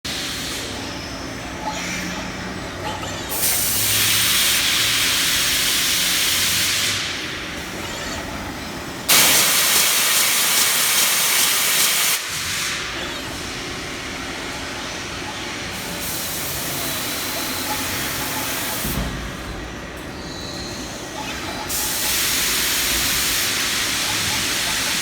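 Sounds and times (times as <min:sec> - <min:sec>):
loud hissing bursts: 0:09.1 - 0:12.9.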